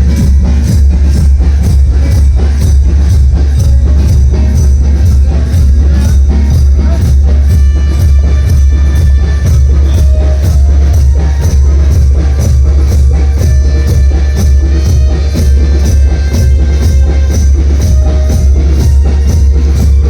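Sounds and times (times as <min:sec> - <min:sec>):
loud music with heavy bass: 0:00.0 - 0:20.0.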